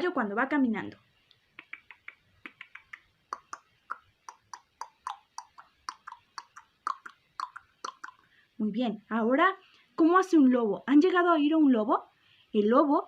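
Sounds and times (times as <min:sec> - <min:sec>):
person clicking tongue: 0:01.3 - 0:08.3.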